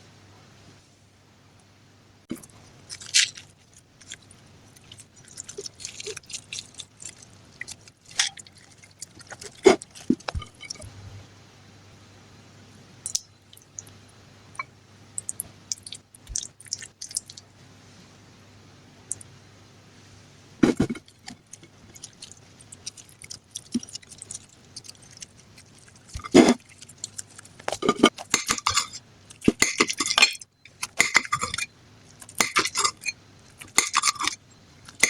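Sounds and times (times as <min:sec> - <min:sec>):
utensils clicking and tapping: 0:26.1 - 0:35.0.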